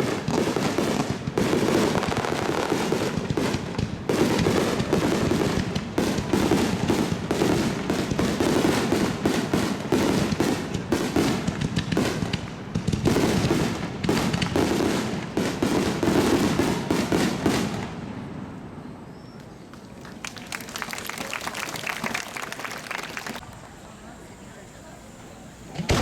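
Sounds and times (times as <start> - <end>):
fireworks booming and crackling: 0.0 - 18.8, 25.2 - 26.0.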